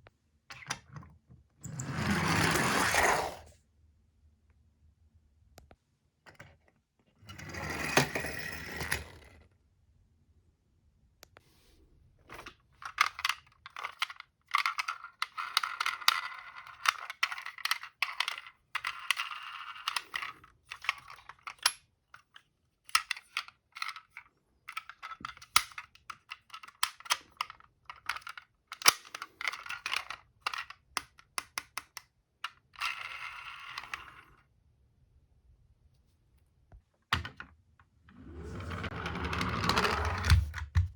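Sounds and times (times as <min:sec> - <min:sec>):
toy cars clicking and clacking: 0:12.4 - 0:34.2
toy cars rattling while rolling: 0:12.8 - 0:21.8.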